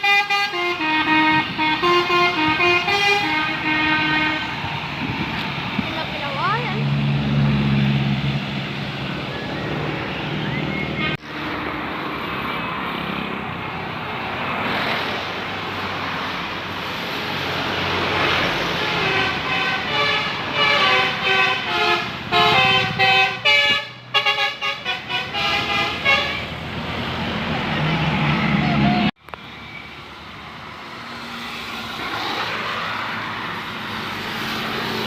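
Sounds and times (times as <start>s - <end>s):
multi-tone bus horn tune: 0.0s - 4.6s, 11.0s - 11.2s, 18.8s - 26.6s
engine and traffic noise: 0.0s - 35.0s.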